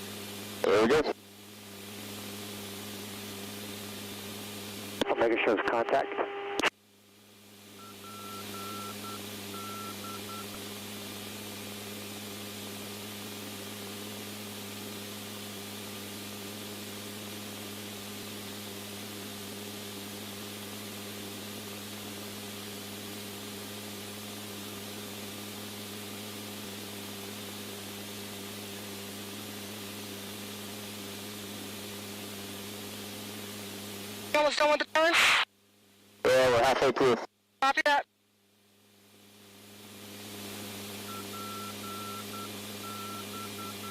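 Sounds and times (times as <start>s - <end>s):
radio static hiss: 0.0s - 6.8s, 15.8s - 35.6s, 36.2s - 38.1s, 38.7s - 43.9s
low electrical hum: 0.0s - 43.9s
radio channel hiss: 0.2s - 1.3s, 3.5s - 6.7s, 33.3s - 35.5s, 36.2s - 38.1s
short electronic beeps: 7.8s - 10.5s, 41.1s - 43.9s.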